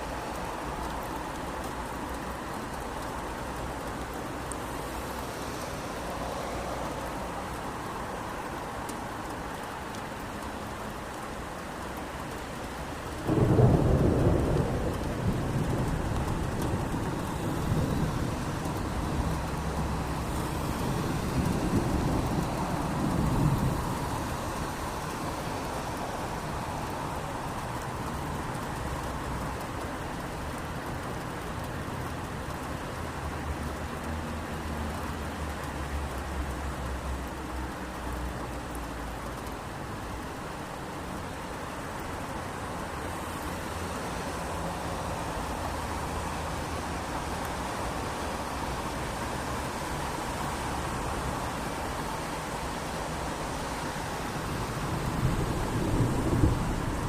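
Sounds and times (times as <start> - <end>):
steady rain: 0.0 - 57.0
thunder rumbling: 13.2 - 20.1, 20.7 - 25.8, 54.4 - 57.0.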